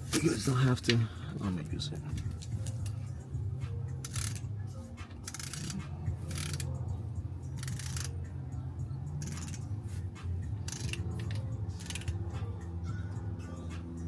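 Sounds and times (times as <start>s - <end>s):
ratchet wrench clicking: 4.0s - 4.5s, 5.1s - 8.3s, 9.1s - 9.7s, 10.4s - 12.4s.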